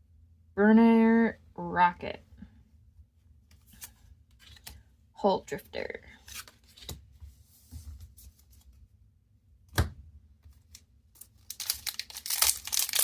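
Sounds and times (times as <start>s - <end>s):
trading cards being handled: 3.5s - 4.8s, 6.2s - 7.1s, 10.5s - 13.0s
foil wrapper crinkling: 11.2s - 13.0s.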